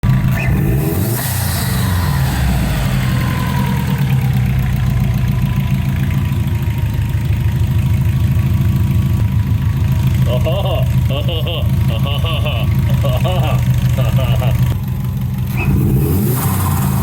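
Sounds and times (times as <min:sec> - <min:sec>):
high whine: 0:00.0 - 0:07.2
car engine idling: 0:00.0 - 0:17.0.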